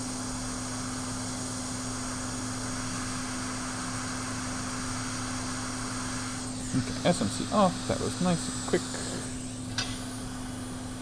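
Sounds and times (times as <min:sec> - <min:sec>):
hot-air station hissing: 0:00.0 - 0:11.0
electrical hum: 0:01.9 - 0:11.0.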